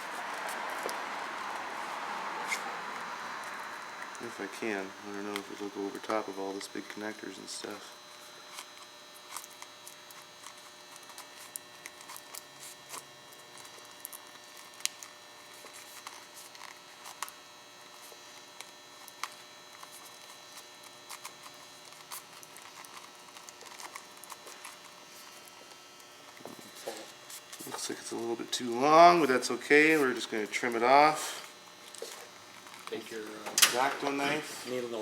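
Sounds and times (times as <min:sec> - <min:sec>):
steady electrical hum: 0:00.0 - 0:35.0.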